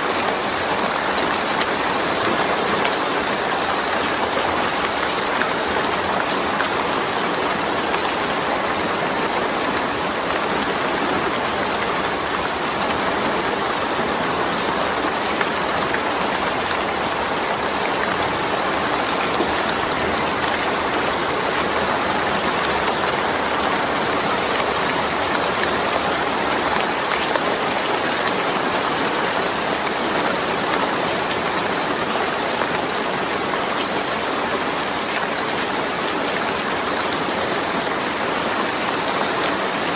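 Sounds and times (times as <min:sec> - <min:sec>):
rain on a metal roof: 0:00.0 - 0:39.9.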